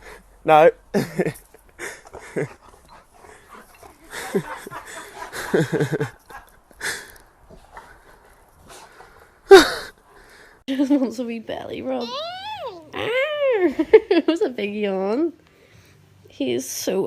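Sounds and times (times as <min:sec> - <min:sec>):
dog crying out: 0:12.0 - 0:13.3.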